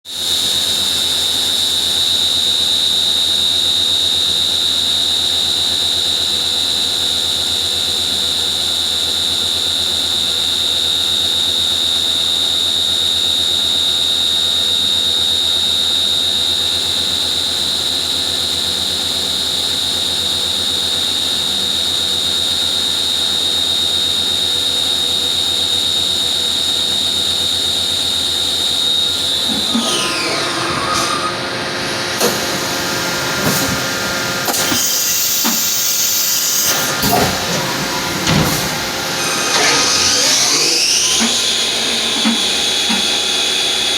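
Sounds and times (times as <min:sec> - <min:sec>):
machine spindle high-pitched whine: 0:00.1 - 0:43.9.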